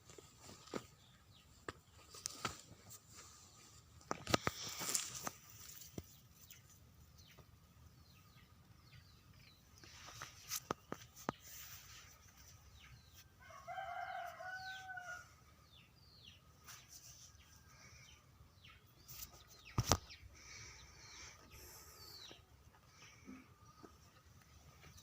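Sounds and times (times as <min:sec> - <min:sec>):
chicks peeping: 0:17.3 - 0:25.0.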